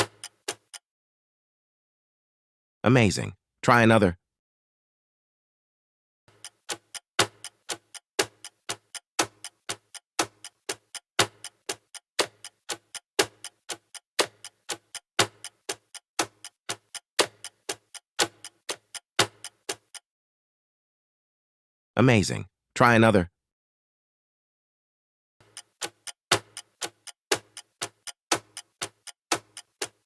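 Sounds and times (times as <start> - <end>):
clock ticking: 0.0 - 0.8, 6.3 - 20.0, 25.4 - 30.0.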